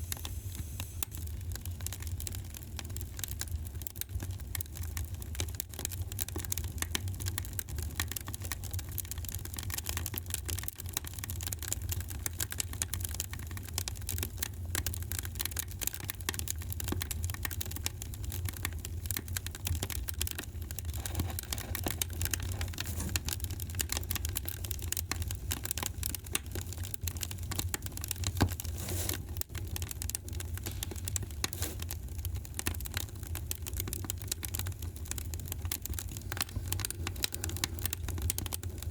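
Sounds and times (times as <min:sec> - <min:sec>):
low rumble of flame: 0:00.0 - 0:38.9
wood fire crackling: 0:00.0 - 0:38.9.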